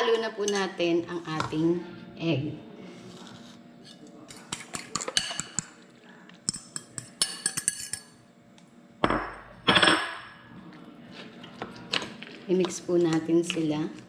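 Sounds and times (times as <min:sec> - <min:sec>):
utensil clinking against bowl: 0:03.9 - 0:05.7, 0:06.4 - 0:08.2.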